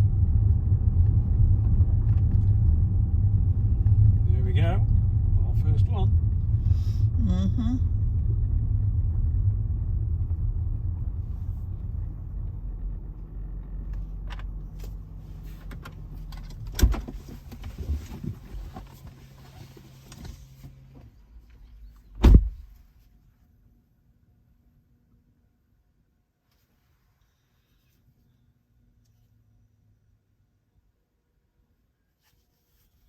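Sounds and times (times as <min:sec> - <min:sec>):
car engine and road noise: 0:00.0 - 0:27.1
loud thump: 0:22.2 - 0:22.7.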